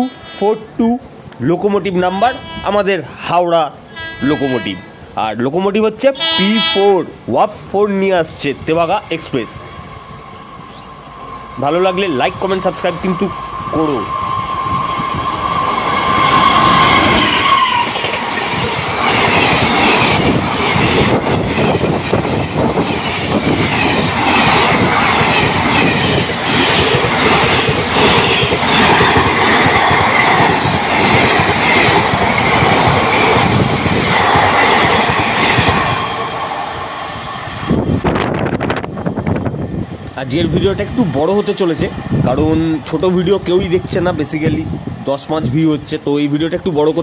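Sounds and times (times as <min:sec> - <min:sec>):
train horn: 0:00.0 - 0:00.6, 0:02.0 - 0:03.1, 0:03.8 - 0:05.0, 0:06.2 - 0:07.1, 0:13.4 - 0:18.0.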